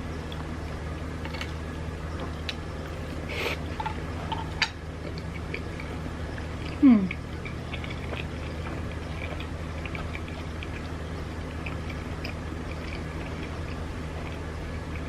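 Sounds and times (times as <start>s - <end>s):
steady low hum: 0.0s - 15.0s
wet chewing and mouth clicks: 0.2s - 15.0s.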